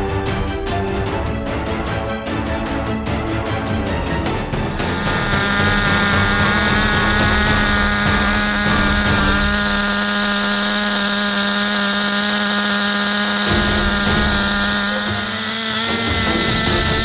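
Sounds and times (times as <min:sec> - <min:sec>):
model car nitro engine whining: 0:04.7 - 0:17.0.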